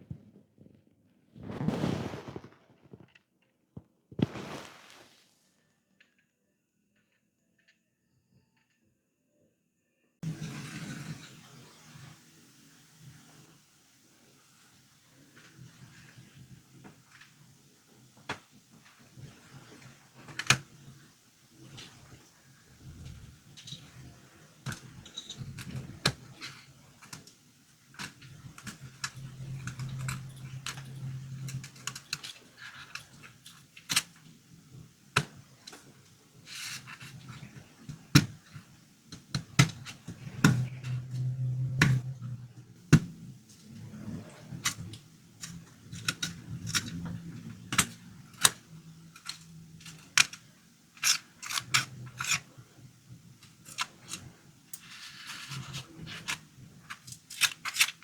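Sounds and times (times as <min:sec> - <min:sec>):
plastic toy clicks and scrapes: 0:24.7 - 0:34.2, 0:36.4 - 0:37.4, 0:44.5 - 0:52.5, 0:53.4 - 0:58.0
low hum: 0:29.0 - 0:32.3.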